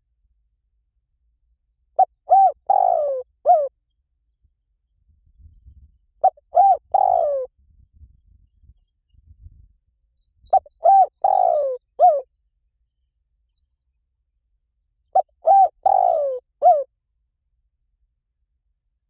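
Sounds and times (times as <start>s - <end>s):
dove cooing: 2.0s - 3.7s, 6.2s - 7.5s, 10.5s - 12.3s, 15.2s - 16.9s.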